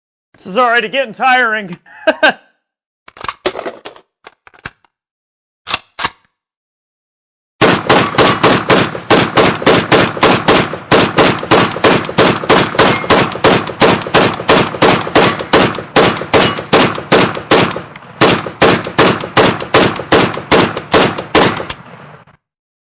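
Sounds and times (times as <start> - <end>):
rifle firing rapid shots: 7.6 - 21.8.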